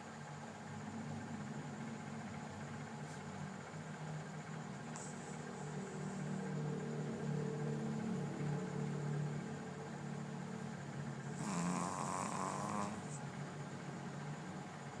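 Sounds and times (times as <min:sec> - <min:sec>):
steady low hum: 0:00.0 - 0:15.0
pet snoring: 0:04.9 - 0:06.6, 0:11.2 - 0:13.4.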